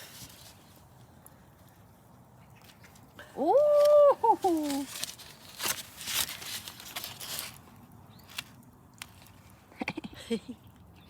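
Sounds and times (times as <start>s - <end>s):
rustling and tearing: 0.0s - 1.2s, 2.6s - 9.6s.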